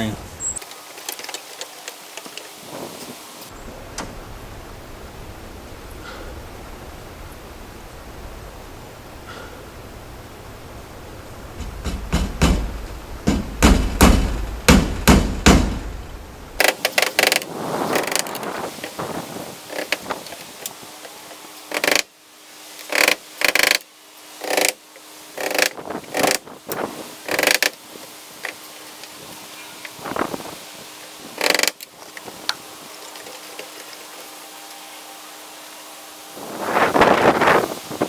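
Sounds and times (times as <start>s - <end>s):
faint steady hum: 0.0s - 38.0s
hand tool knocking: 11.6s - 16.0s.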